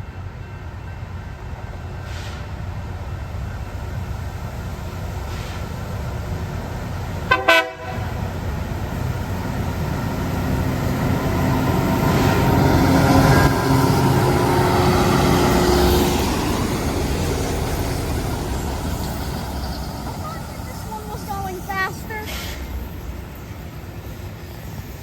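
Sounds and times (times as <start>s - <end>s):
rail grinder train grinding: 0.0s - 25.0s
train horn toot: 7.3s - 8.3s.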